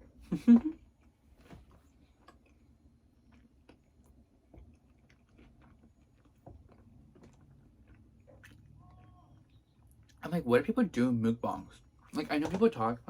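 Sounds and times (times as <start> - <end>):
person chewing food: 0.1 - 10.2.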